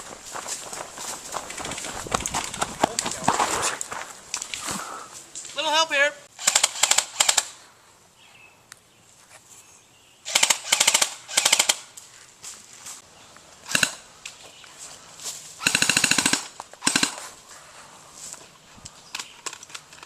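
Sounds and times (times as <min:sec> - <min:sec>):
airsoft guns firing: 0:06.4 - 0:07.6, 0:10.3 - 0:11.9, 0:13.7 - 0:14.0, 0:15.6 - 0:17.3.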